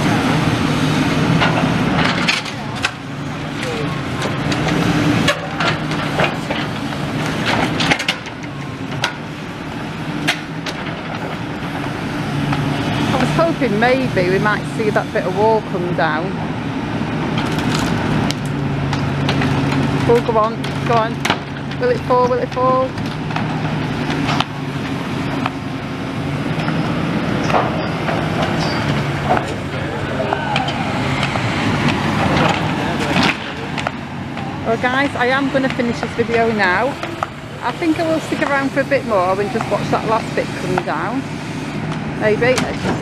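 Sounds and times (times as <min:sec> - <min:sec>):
machine engine hum: 0:00.0 - 0:43.0
debris cracking and knocking: 0:17.3 - 0:24.6, 0:31.2 - 0:34.5.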